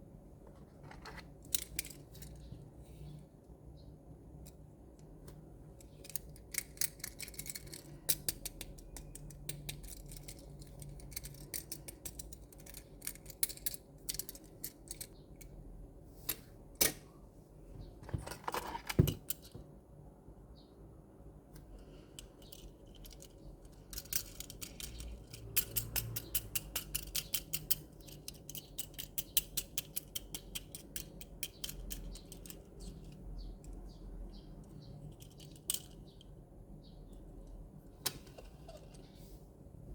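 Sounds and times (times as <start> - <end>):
toy trucks clicking and rattling: 5.9 - 15.5, 22.3 - 33.8, 35.0 - 36.0.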